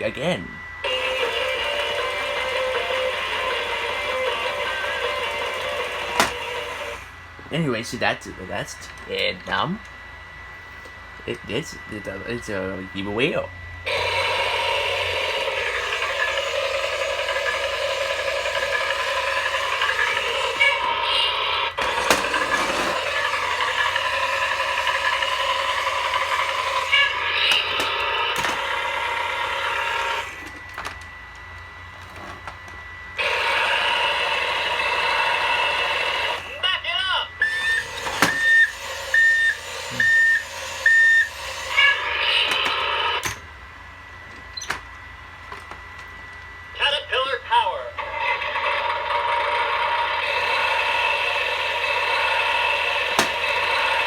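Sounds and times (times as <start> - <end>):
toy backhoe mechanical rattle: 0.9 - 7.0, 13.9 - 30.5, 37.4 - 43.2.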